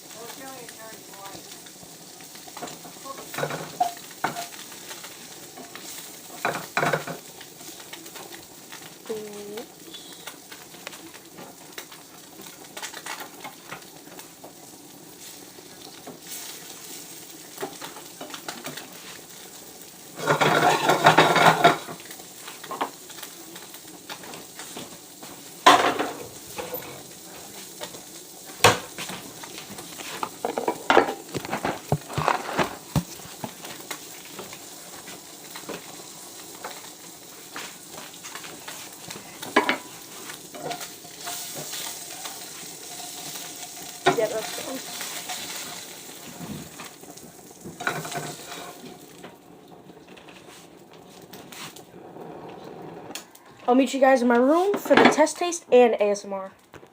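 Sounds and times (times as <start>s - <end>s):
fish sizzling in a pan: 0.0s - 52.0s
utensil scraping the pan: 20.2s - 22.0s, 29.8s - 33.5s, 37.6s - 46.5s, 47.8s - 49.0s.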